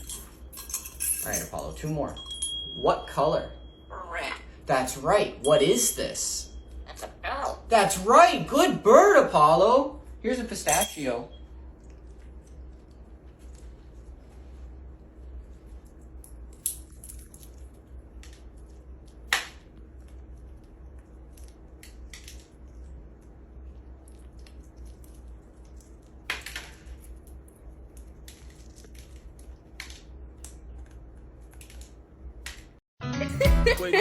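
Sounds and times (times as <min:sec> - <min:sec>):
low steady hum: 0:00.0 - 0:32.8
parrot cracking a nut: 0:20.5 - 0:22.7.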